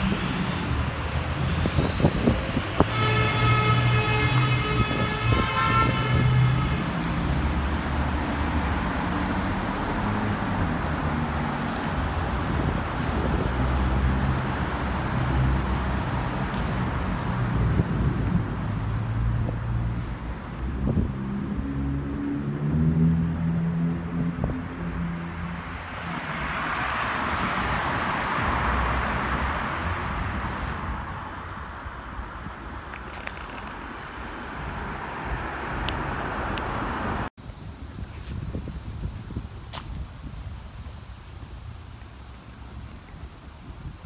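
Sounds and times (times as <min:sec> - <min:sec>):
whine rising in pitch: 0:00.1 - 0:04.9
locomotive horn: 0:02.7 - 0:08.7.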